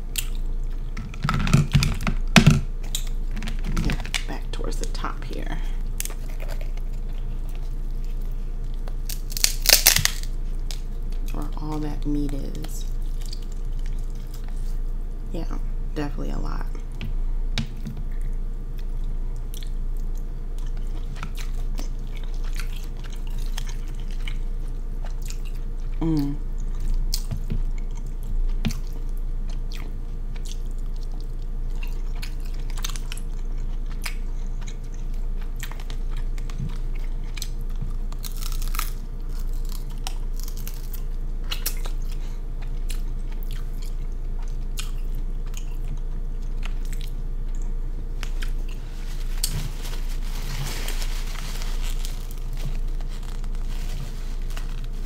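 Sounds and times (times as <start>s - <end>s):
sharp clicks and crunches: 8.8s - 10.8s
chewing and mouth smacking: 18.1s - 26.0s, 26.6s - 49.6s.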